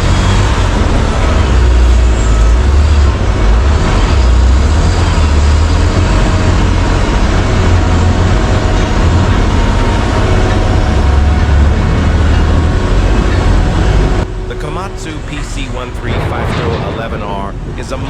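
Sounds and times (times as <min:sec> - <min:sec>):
diesel engine rumble: 0:00.0 - 0:18.0
mechanical din: 0:14.6 - 0:17.8.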